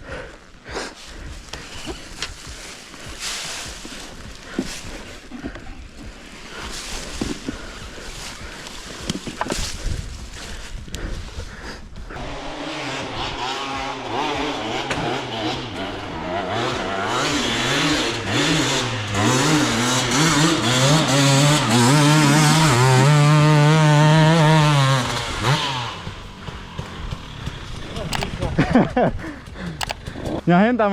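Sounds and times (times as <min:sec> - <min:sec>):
dirt bike engine revving: 0:12.1 - 0:28.4.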